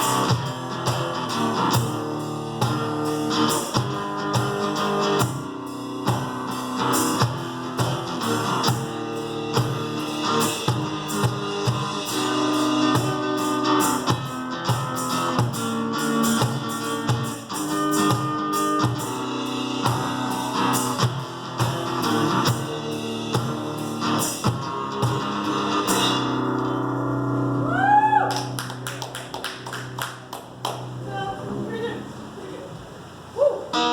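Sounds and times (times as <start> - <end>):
steady drum beat: 0.0 - 26.4
strummed guitar: 0.0 - 32.4, 33.7 - 33.9.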